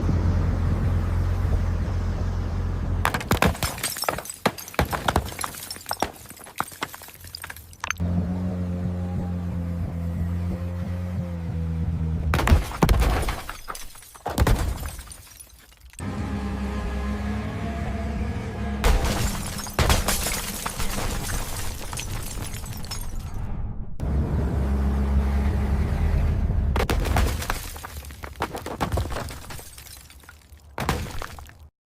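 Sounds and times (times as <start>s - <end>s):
car crash crunch: 3.0s - 8.0s, 12.3s - 16.0s, 18.8s - 23.6s, 26.8s - 31.7s
debris clattering: 3.0s - 8.0s, 12.4s - 16.0s, 18.8s - 23.4s, 26.8s - 31.7s
glass shattering: 3.1s - 8.0s, 12.4s - 16.0s, 18.8s - 23.4s, 26.8s - 31.6s
car crash impacts: 18.8s - 23.4s.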